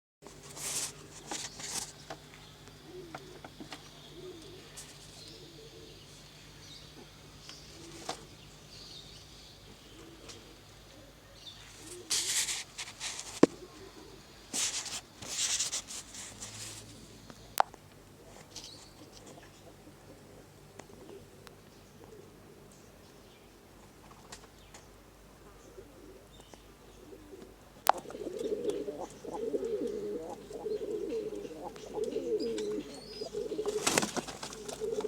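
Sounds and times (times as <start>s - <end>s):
birds giving soft wavering calls: 0.9s - 14.7s, 24.6s - 35.0s.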